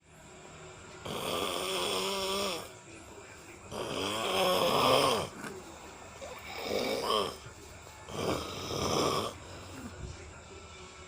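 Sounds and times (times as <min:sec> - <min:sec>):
man snoring loudly: 0:01.0 - 0:02.7, 0:03.7 - 0:05.5, 0:06.4 - 0:07.4, 0:08.1 - 0:09.8.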